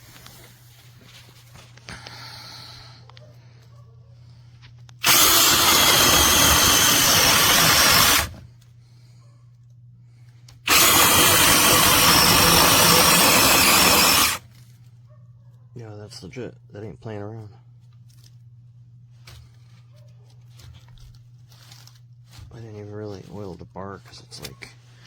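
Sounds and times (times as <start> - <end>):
chainsaw running at full speed: 5.0 - 8.4, 10.7 - 14.4.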